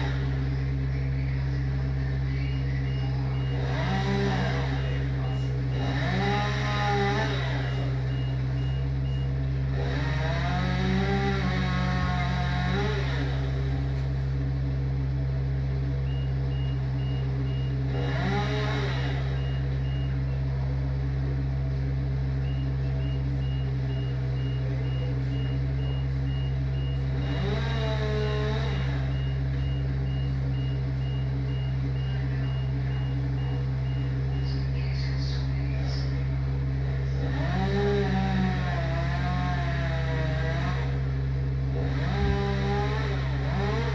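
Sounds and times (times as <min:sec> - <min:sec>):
reversing alarm beeping: 0:00.0 - 0:13.9, 0:15.8 - 0:20.6, 0:22.0 - 0:36.6
heavy vehicle engine running: 0:00.0 - 0:43.9.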